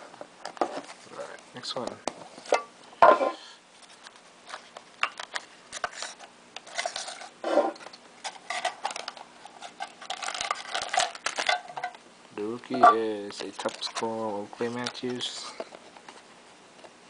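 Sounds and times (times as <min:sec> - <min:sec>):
cards rustling and clicking: 0:03.8 - 0:11.5, 0:13.2 - 0:16.2
wrapper crinkling and tearing: 0:08.2 - 0:11.8, 0:13.4 - 0:14.1.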